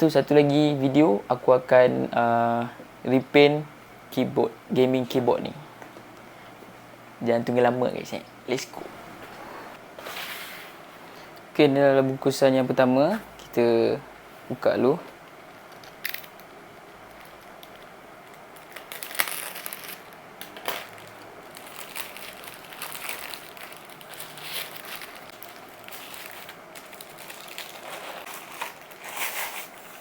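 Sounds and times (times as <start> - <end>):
packaging tearing and rustling: 17.2 - 30.0.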